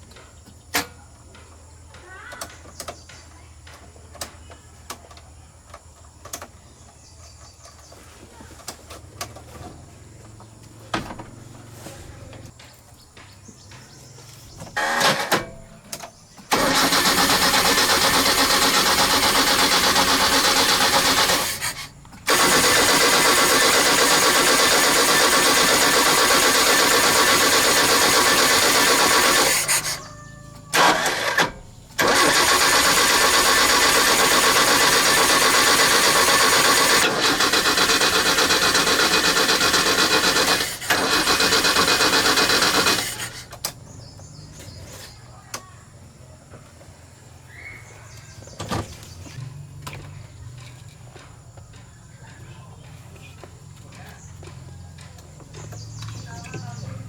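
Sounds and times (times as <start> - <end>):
engine cranking: 8.6 - 12.6, 14.6 - 45.2
engine running loudly: 16.5 - 30.0, 30.7 - 43.5.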